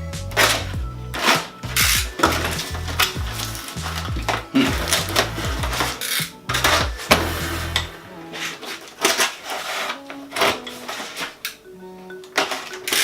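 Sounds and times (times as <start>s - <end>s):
background music with bass: 0.0s - 8.8s
metal parts knocking and clattering: 0.4s - 8.0s.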